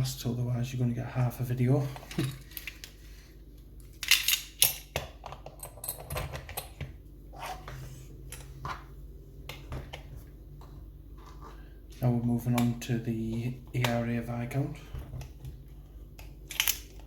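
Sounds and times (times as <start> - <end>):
metal lock parts clinking: 3.8 - 6.8, 16.4 - 17.0.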